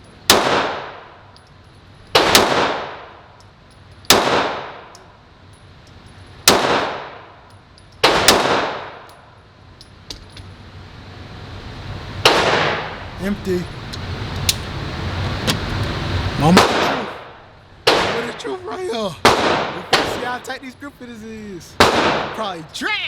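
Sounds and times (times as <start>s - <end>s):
pistol shots echoing indoors: 2.2s - 3.2s, 4.1s - 5.0s, 6.4s - 7.4s, 8.0s - 9.1s, 12.2s - 12.9s, 17.8s - 18.4s, 19.2s - 20.2s, 21.8s - 22.4s.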